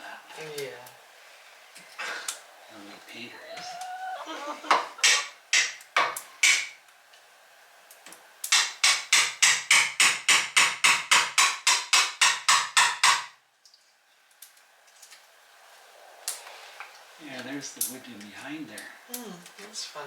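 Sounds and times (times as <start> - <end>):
hammer strikes: 4.7 - 6.8, 8.5 - 13.4.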